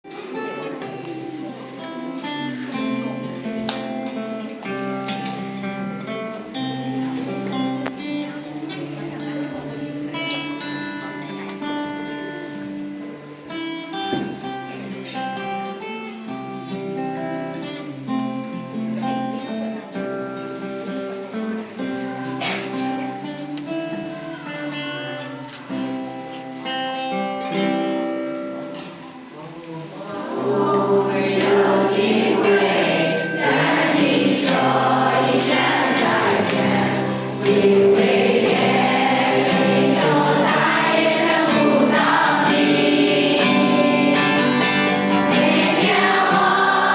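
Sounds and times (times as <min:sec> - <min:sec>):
guitar accompaniment: 0:00.0 - 0:46.9
group of voices singing: 0:30.0 - 0:46.9.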